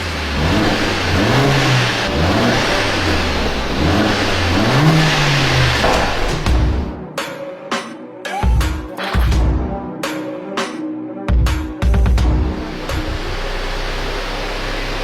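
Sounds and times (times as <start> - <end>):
car engine revving: 0.0 - 7.0, 12.2 - 15.0.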